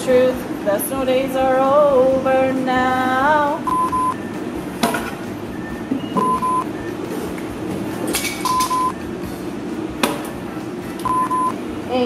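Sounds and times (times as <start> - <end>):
steady background hum: 0.0 - 12.0
electronic beeps: 3.6 - 4.3, 5.5 - 7.0, 8.5 - 9.1, 11.0 - 11.6.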